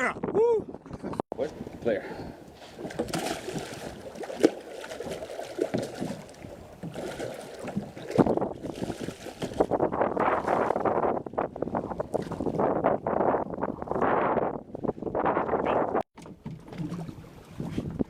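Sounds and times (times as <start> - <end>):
wind on microphone: 0.0 - 1.8, 5.9 - 16.1, 16.9 - 18.0
water sloshing around boat: 0.8 - 18.0.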